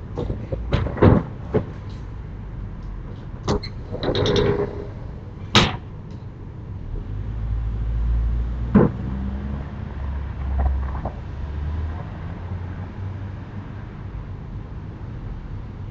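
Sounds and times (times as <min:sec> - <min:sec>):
low rumble: 0:00.0 - 0:14.6
sharp knocks: 0:03.5 - 0:05.9, 0:08.7 - 0:09.2
short rattle: 0:03.5 - 0:05.9.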